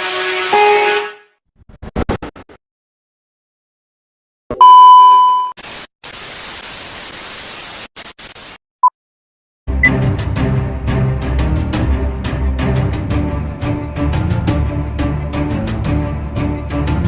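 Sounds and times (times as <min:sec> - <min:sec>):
loud high beep: 0:04.6 - 0:05.6
hissing static: 0:05.6 - 0:08.6.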